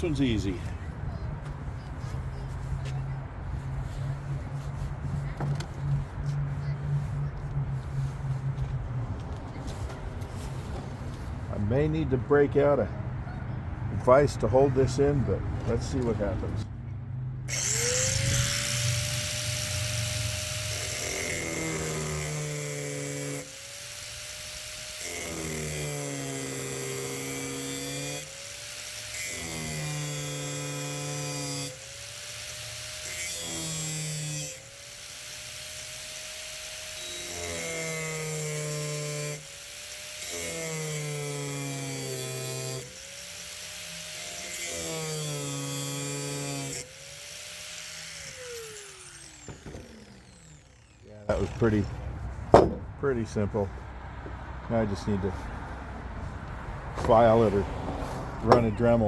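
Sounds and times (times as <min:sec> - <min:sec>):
motor winding down: 0:17.5 - 0:52.1
rotary tool cutting metal: 0:17.5 - 0:52.8, 0:58.4 - 0:59.0.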